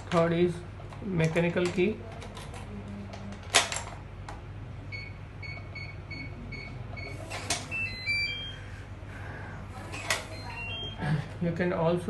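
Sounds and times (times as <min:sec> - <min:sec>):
keypad beeps: 0:04.9 - 0:08.7, 0:10.0 - 0:11.0.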